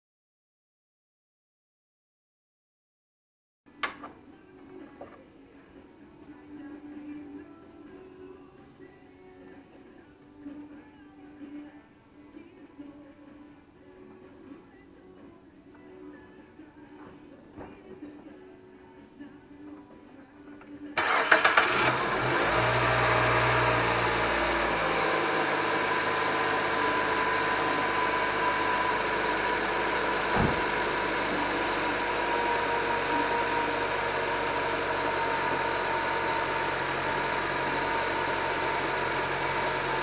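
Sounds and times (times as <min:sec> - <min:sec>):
car engine starting and idling: 0:21.0 - 0:40.0.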